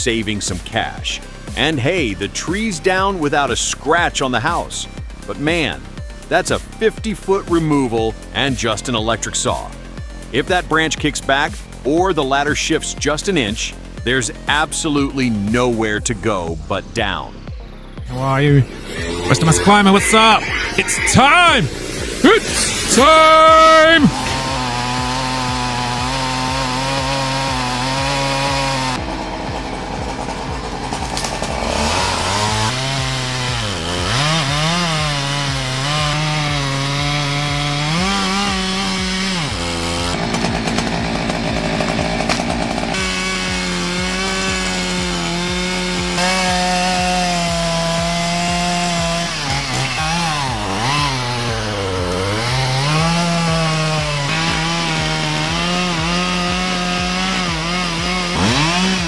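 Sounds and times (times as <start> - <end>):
chainsaw cutting wood: 0.0 - 17.2, 18.8 - 59.0.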